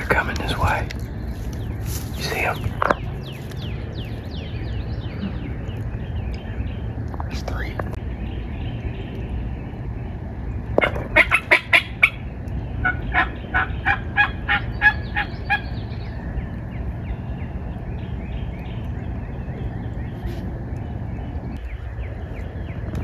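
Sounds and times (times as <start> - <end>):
wild turkey yelping: 1.4 - 3.6, 10.8 - 12.2, 12.8 - 15.8.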